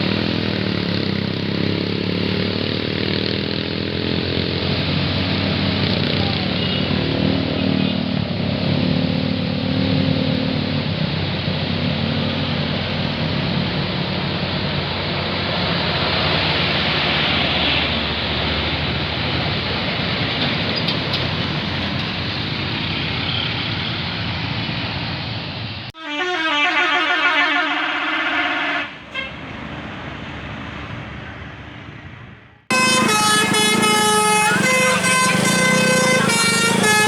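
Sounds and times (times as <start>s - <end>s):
bus engine running: 0.0s - 37.0s
road noise: 0.0s - 37.0s
multi-tone bus air horn melody: 26.0s - 29.5s, 32.7s - 37.0s.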